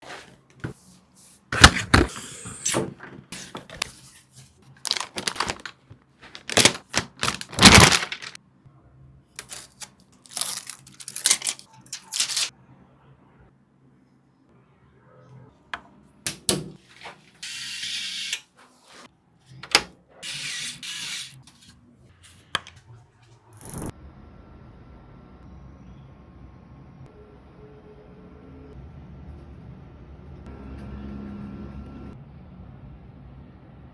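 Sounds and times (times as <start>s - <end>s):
packaging rustling: 4.8s - 8.4s, 9.4s - 12.5s.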